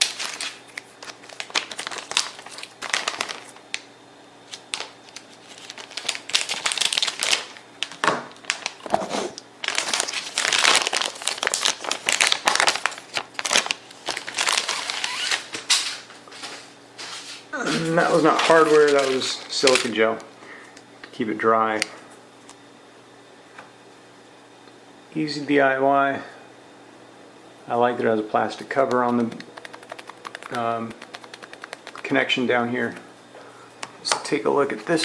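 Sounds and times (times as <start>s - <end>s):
plastic packaging crinkling: 0.0s - 3.9s, 4.5s - 8.9s, 9.6s - 15.8s, 28.8s - 33.0s.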